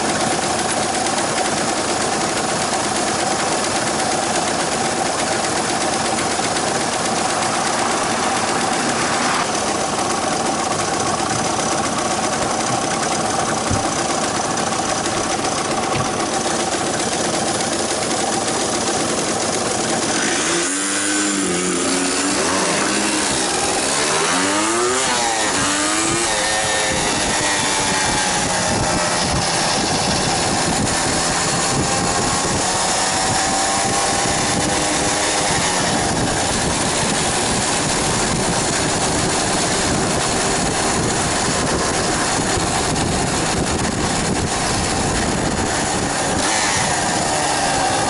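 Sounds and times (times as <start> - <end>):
two-stroke motorcycle engine: 0.0 - 48.0
wind rush on microphone: 25.6 - 48.0.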